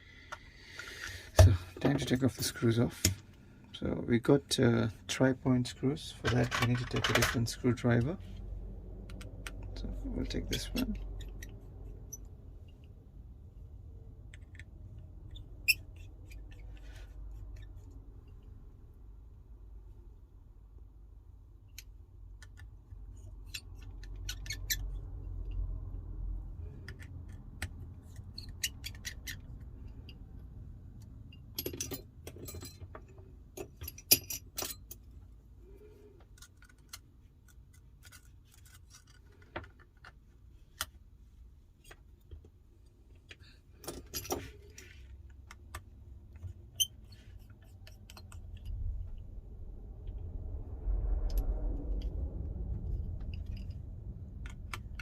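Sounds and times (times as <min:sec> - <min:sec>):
faint low rumble: 0:01.2 - 0:23.5, 0:44.6 - 0:55.0.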